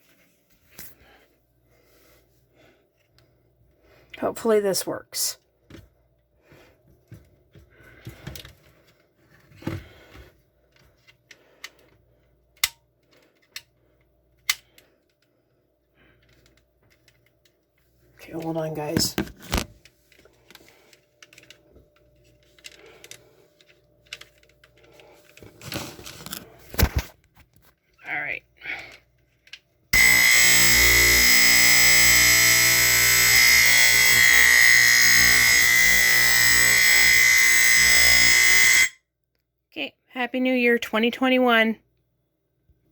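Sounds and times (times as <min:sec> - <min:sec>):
rustling and scraping: 0:19.1 - 0:28.0
smoke alarms beeping: 0:30.0 - 0:39.0.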